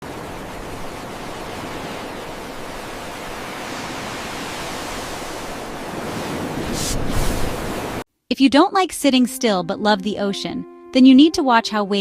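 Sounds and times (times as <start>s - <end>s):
ocean surf: 0.0s - 8.0s.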